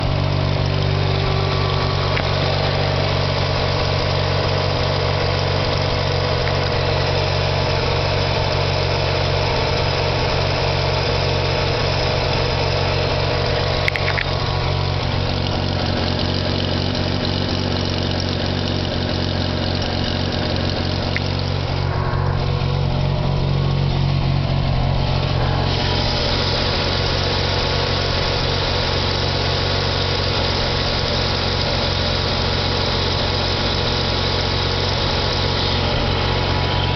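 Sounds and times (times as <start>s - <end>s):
engine noise: 0.0s - 36.9s
rotary engine idling: 0.0s - 36.9s
sharp click: 13.8s - 14.3s.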